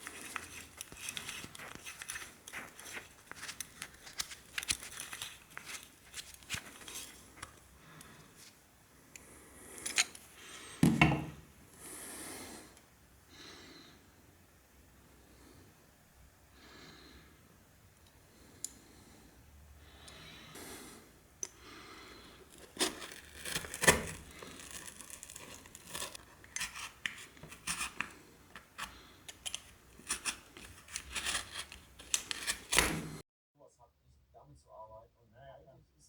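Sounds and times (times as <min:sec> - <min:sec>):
tearing and scraping: 0:00.0 - 0:07.6, 0:22.4 - 0:33.2.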